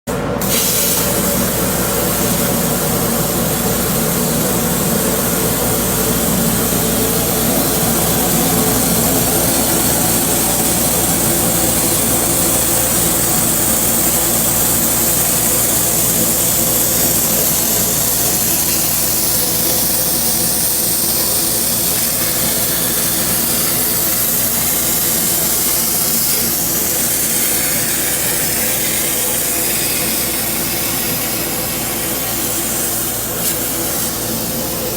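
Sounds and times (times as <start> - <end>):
machine hiss: 0.1 - 34.9
machine hum: 0.1 - 34.9.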